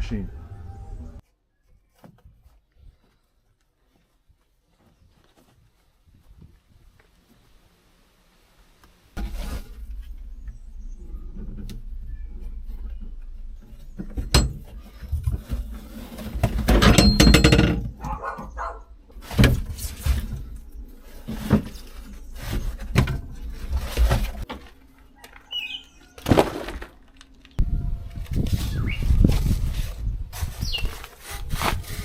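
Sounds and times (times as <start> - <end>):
rustling: 1.2 - 17.2, 17.9 - 32.0
objects knocking and clattering: 13.0 - 18.4.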